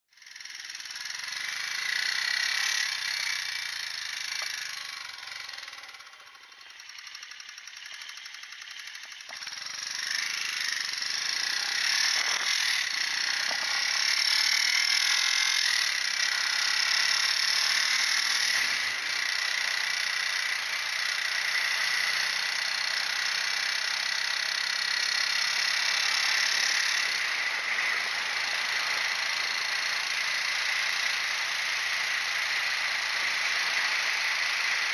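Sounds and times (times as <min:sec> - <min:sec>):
motorcycle engine running: 0:00.1 - 0:34.9.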